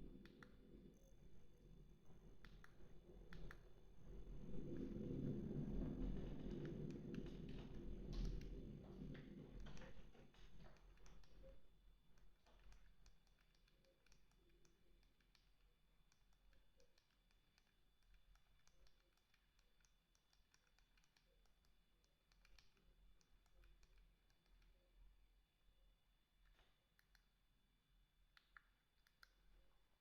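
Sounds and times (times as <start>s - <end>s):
faint irregular clicking of phone controls: 12.2s - 25.0s, 26.4s - 27.4s.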